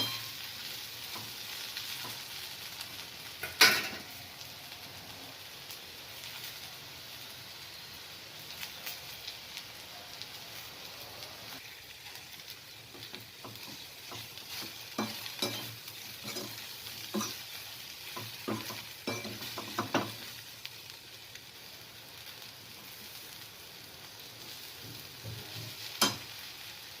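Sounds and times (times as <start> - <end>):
okra sizzling in a pan: 0.0 - 27.0
spatula knocking and scraping pan: 13.0 - 17.4, 18.1 - 20.3.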